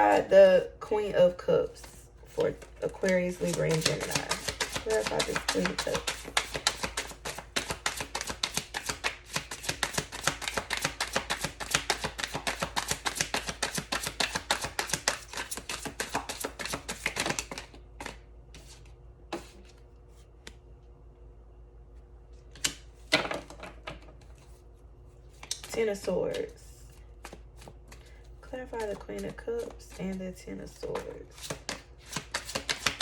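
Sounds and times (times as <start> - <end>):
cards being shuffled: 1.8 - 19.8, 25.3 - 26.5, 27.2 - 30.1, 30.8 - 33.0
cards tapping and snapping: 2.5 - 18.2, 25.4 - 26.1, 27.2 - 28.2, 31.0 - 33.0.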